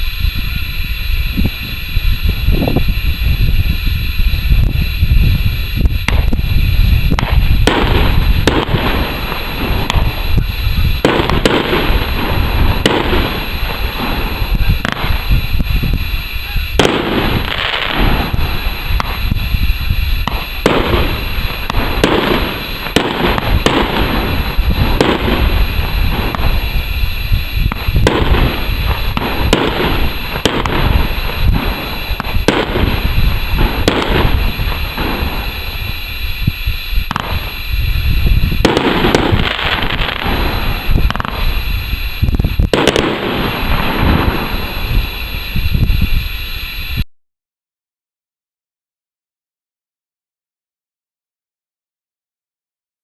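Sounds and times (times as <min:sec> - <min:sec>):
firework shots: 0:00.0 - 0:47.0
steady rush of noise: 0:00.0 - 0:47.1.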